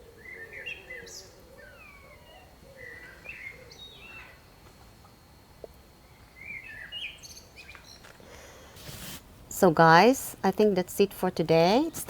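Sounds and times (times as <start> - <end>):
songbirds chirping: 0.0 - 8.8.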